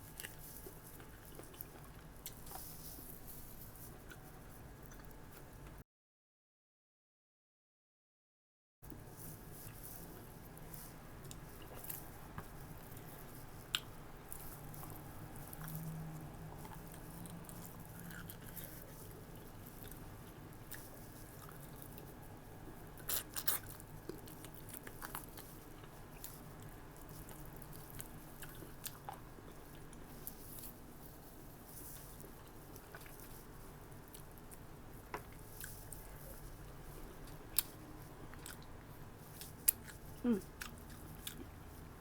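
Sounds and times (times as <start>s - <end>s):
person chewing: 0.2s - 3.0s, 16.5s - 30.9s, 31.8s - 41.6s.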